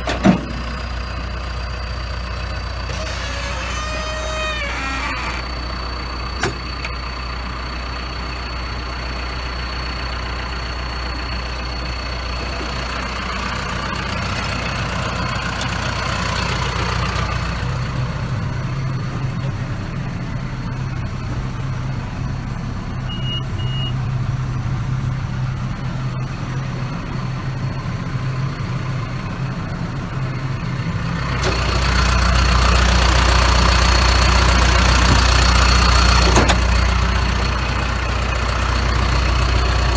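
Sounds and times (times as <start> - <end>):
diesel engine running: 0.0 - 39.9
faint high beeps: 23.1 - 24.0.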